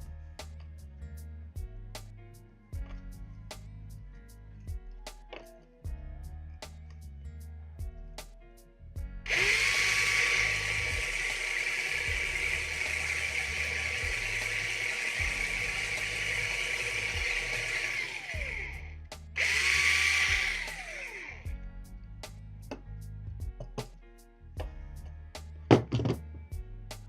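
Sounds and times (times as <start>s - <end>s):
electric drill whining: 9.3s - 21.5s.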